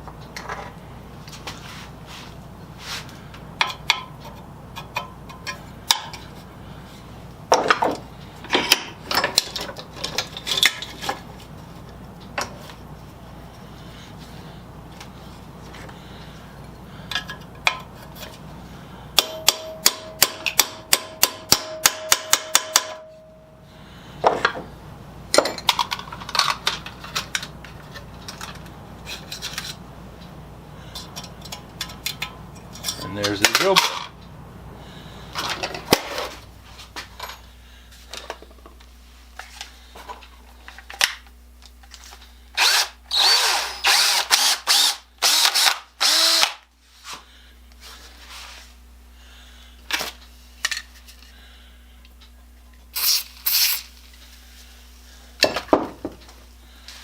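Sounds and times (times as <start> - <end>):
metal tools clinking: 30.9 - 34.1, 37.0 - 37.6.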